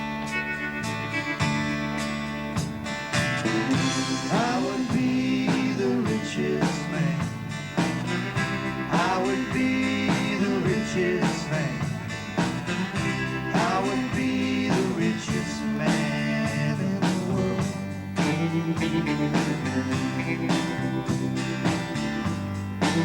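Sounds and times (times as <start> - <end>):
country band playing: 0.0 - 23.0
lead instrument bending melody: 17.5 - 23.0.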